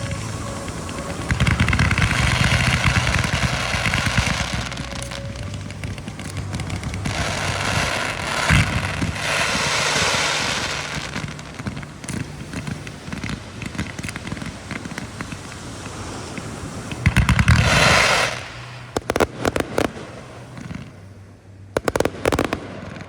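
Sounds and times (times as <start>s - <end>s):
firework rushing hiss: 0.0s - 21.1s
rapid firework crackling: 0.0s - 21.1s, 21.8s - 23.0s
firework sharp bang: 17.0s - 20.1s.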